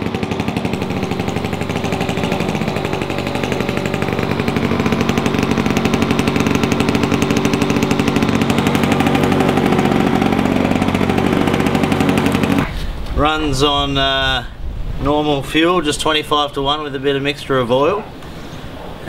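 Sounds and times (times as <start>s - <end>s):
lawnmower engine running: 0.0s - 13.2s.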